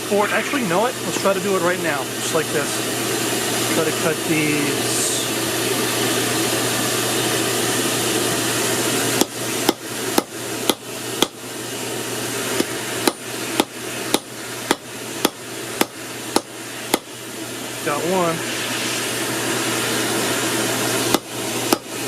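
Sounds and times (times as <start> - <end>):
forge blower air rush: 0.0 - 22.0
hammer striking hot steel: 9.2 - 11.4, 12.6 - 17.1, 21.1 - 22.0.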